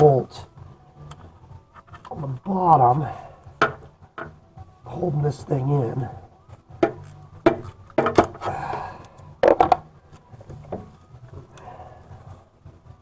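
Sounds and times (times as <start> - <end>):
hand tools knocking on metal: 3.6 - 4.4, 6.8 - 8.6.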